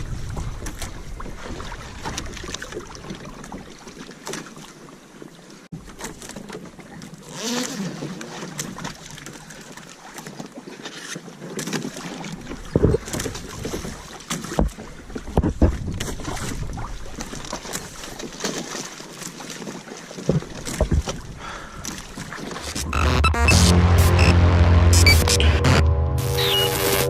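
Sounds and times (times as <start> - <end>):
wind on microphone: 0.0 - 1.6
water sloshing against kayak: 0.0 - 22.8.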